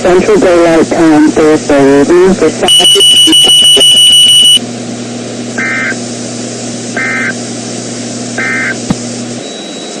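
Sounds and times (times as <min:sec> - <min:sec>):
radio hiss: 0:00.0 - 0:04.6, 0:05.5 - 0:07.4, 0:08.4 - 0:09.1
two-tone digital data bursts: 0:02.6 - 0:04.6, 0:05.6 - 0:06.0, 0:07.0 - 0:07.4, 0:08.4 - 0:08.8.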